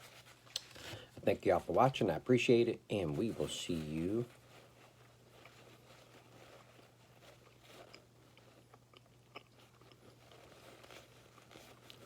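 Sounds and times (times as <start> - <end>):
low steady hum: 0.0 - 12.0
faint chewing: 4.3 - 12.0.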